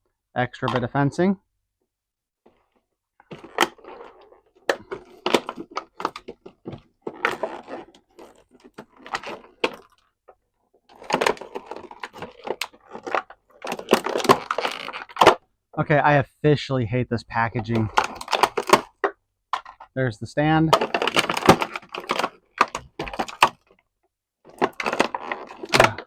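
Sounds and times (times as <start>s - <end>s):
plastic and cardboard crinkling: 2.5s - 10.1s, 10.9s - 15.4s, 17.6s - 19.9s, 20.7s - 23.8s, 24.5s - 26.0s
packaging clicks and snaps: 10.9s - 15.4s, 17.8s - 19.8s, 20.8s - 23.6s, 24.5s - 26.0s.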